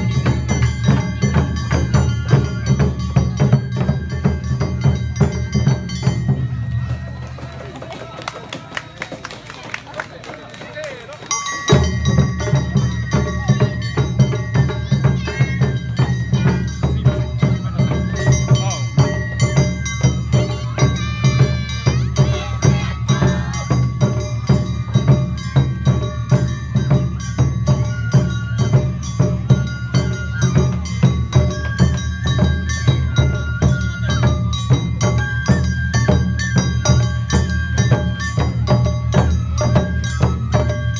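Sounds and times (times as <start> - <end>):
clanging bell: 0.0 - 7.2, 11.1 - 40.9
festival drums: 0.0 - 40.9
high held melody: 11.3 - 40.9.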